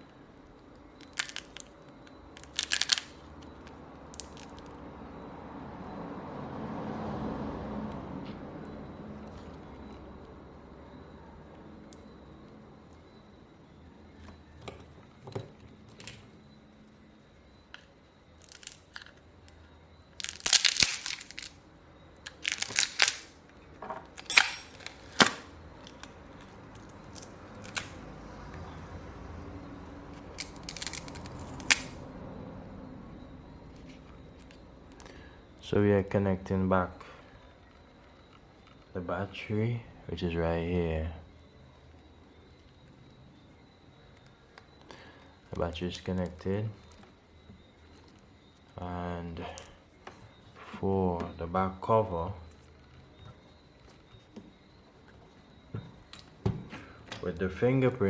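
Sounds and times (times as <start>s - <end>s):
crinkling handling noise: 1.0s - 4.6s, 17.7s - 21.6s, 22.2s - 28.0s, 30.1s - 32.0s
phone parts and tools clicking: 1.0s - 4.7s, 17.7s - 19.6s, 20.2s - 21.6s, 22.2s - 28.0s, 30.1s - 32.0s.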